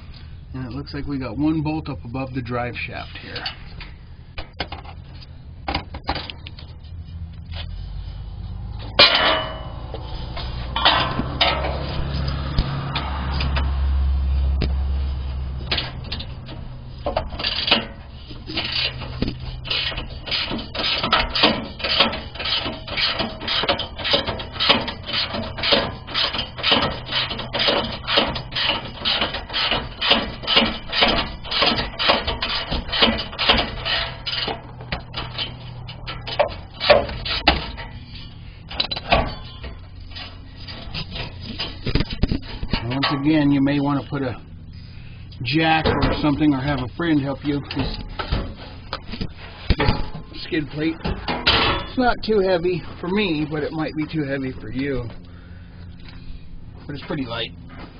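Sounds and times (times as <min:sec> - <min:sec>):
low rumble: 0:00.0 - 0:27.1
scraping: 0:05.9 - 0:57.9.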